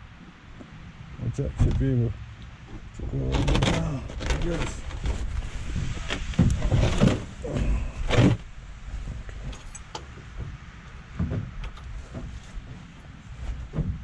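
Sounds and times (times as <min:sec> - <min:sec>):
hydraulic jack knocks and scrapes: 0:06.0 - 0:07.4, 0:08.0 - 0:08.5.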